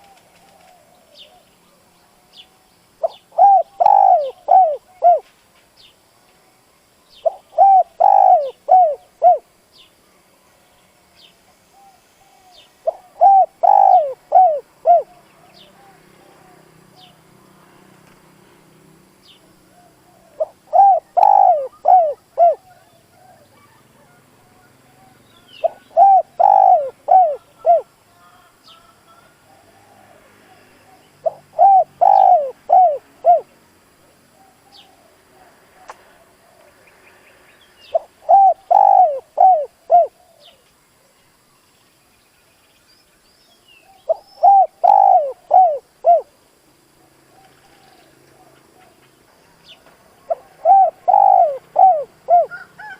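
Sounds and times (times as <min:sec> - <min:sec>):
dove cooing: 0:00.0 - 0:01.5, 0:02.2 - 0:05.3, 0:07.2 - 0:09.5, 0:11.7 - 0:17.2, 0:19.6 - 0:33.5, 0:37.9 - 0:40.6, 0:43.8 - 0:46.4, 0:47.0 - 0:49.0, 0:49.8 - 0:52.9
small birds chirping: 0:00.0 - 0:28.8, 0:30.5 - 0:35.2, 0:35.8 - 0:46.4, 0:47.3 - 0:52.6.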